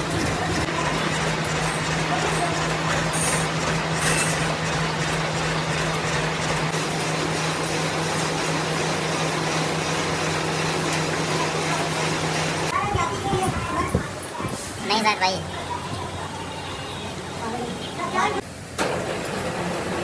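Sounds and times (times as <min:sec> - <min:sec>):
machine tool running: 0:00.0 - 0:12.7.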